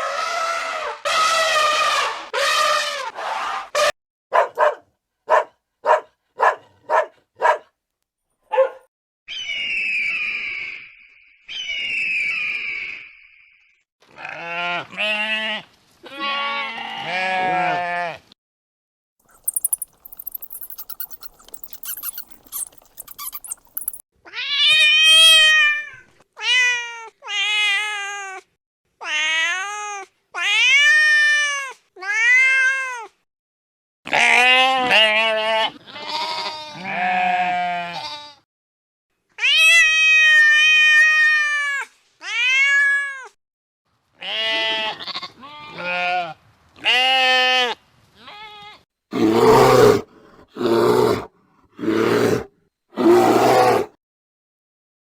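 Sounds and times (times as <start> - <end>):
high squeaking: 19.3 - 24.0.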